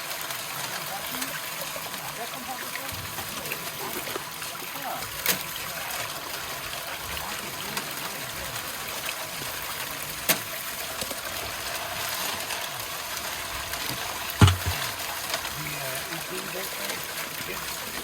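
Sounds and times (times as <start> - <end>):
water running through a sluice: 0.0 - 18.0
loud thump: 14.4 - 14.9
sharp knock: 14.4 - 14.9.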